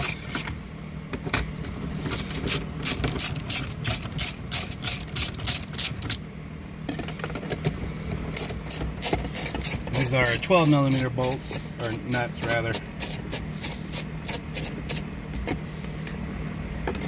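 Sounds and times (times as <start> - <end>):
ratchet wrench clicking: 2.1 - 6.2, 8.4 - 15.0.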